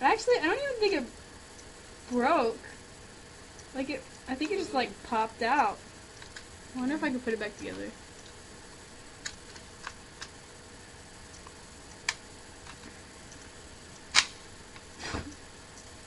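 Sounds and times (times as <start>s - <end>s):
plastic snap: 14.1s - 14.4s.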